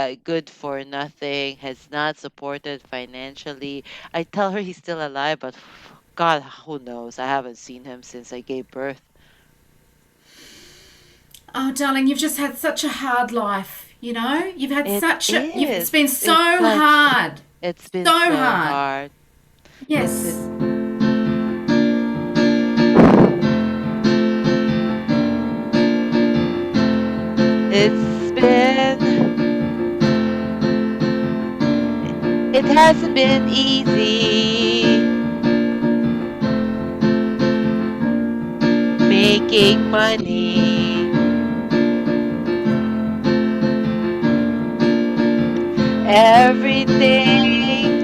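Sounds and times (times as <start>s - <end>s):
electric piano chords: 19.9s - 48.0s
brief noisy burst: 22.9s - 23.4s.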